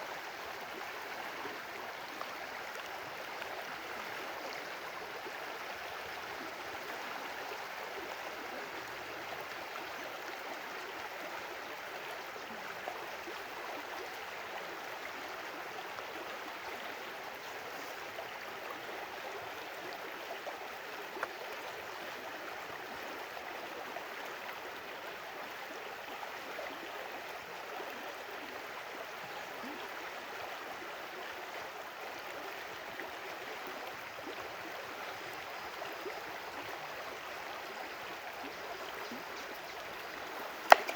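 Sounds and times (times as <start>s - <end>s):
stream flowing: 0.0s - 40.9s.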